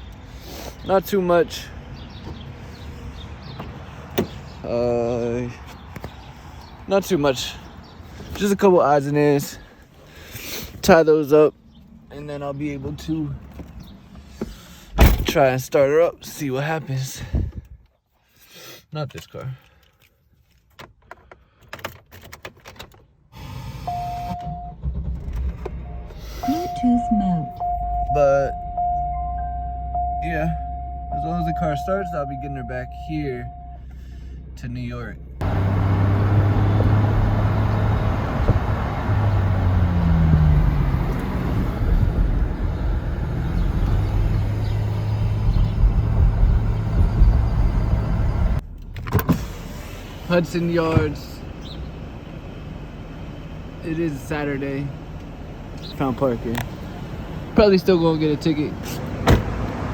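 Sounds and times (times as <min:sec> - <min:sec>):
road vehicle rumble and hiss: 0:00.0 - 0:08.4, 0:35.4 - 0:59.9
clicks of car handling: 0:03.5 - 0:04.4
dashboard beep: 0:23.9 - 0:24.8, 0:25.9 - 0:33.8
car engine running: 0:35.2 - 0:59.9.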